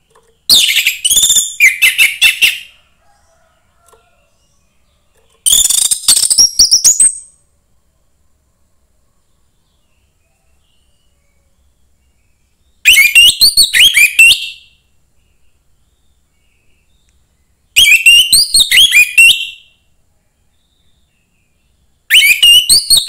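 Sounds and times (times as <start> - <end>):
thrush singing whistled notes: 0.5 - 2.7, 5.5 - 7.4, 12.8 - 14.8, 17.8 - 19.7, 22.1 - 23.0.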